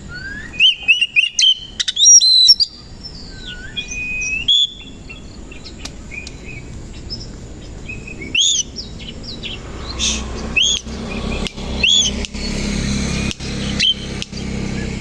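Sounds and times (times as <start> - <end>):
bird singing chirps and whistles: 0.0 - 15.0
loud sharp arched bird note: 8.1 - 15.0.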